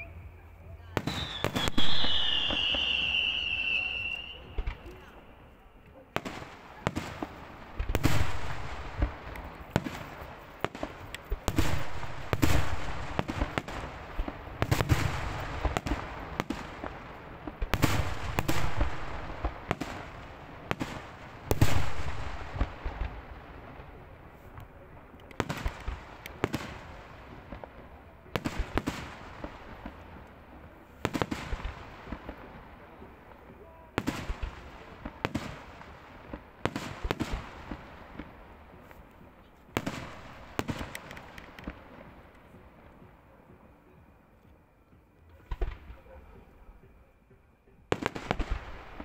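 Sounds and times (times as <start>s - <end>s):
firework crackling: 0.0s - 43.2s
firework booms: 0.9s - 5.1s, 6.1s - 24.0s, 39.7s - 42.6s, 45.4s - 46.1s.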